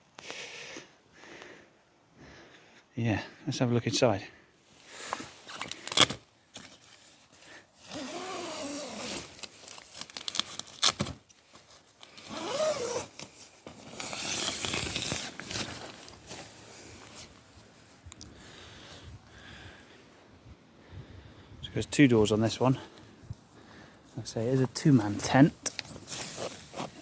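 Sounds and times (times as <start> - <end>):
tent zipper pulled open: 5.2 - 6.2, 7.8 - 10.0, 12.0 - 17.3, 25.6 - 27.0
fabric rustling: 5.2 - 18.0, 24.1 - 27.0.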